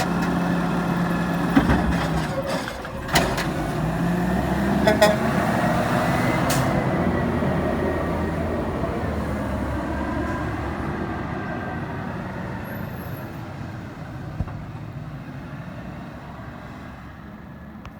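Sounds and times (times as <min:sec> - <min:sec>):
garbage truck engine running: 0:00.0 - 0:05.3.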